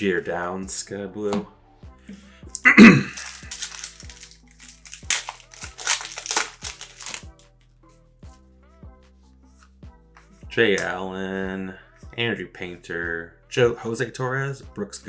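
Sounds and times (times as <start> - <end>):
plastic wrapper crinkling and tearing: 2.6 - 7.4.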